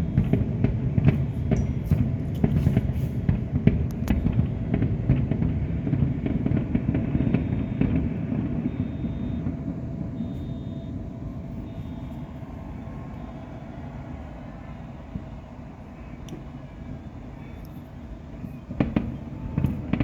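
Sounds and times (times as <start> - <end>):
firework shell bursts rumbling: 0.0 - 13.7, 14.7 - 20.0
firework crackling: 0.0 - 20.0.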